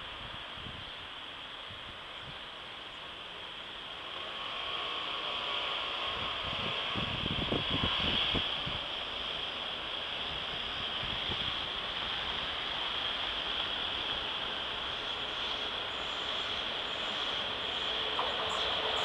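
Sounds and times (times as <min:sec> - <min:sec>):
train rail noise rushing: 0:00.0 - 0:19.0.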